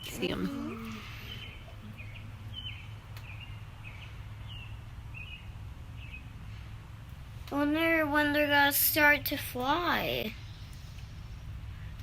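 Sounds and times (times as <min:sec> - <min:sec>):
baby birds cheeping: 0:00.0 - 0:06.8.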